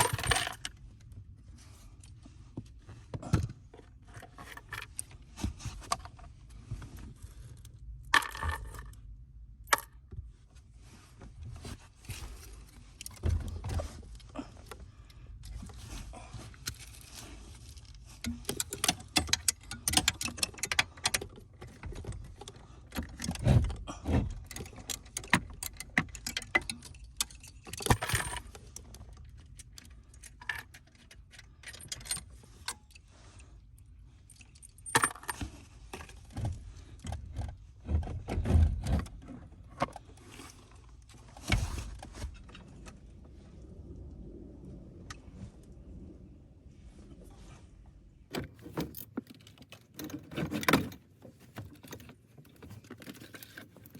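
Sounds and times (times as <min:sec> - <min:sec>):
hand tools clinking and rattling: 0:00.0 - 0:00.7, 0:16.6 - 0:29.0, 0:48.5 - 0:53.9.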